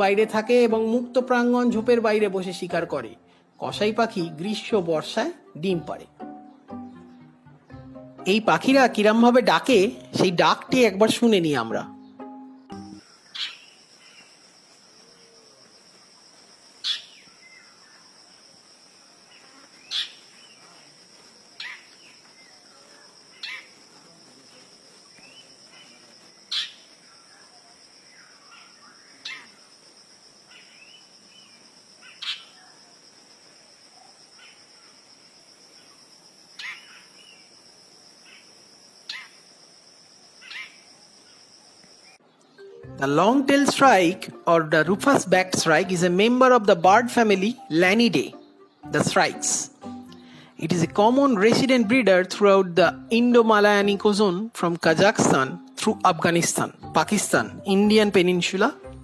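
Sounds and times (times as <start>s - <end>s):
high-pitched insect drone: 13.0s - 42.2s.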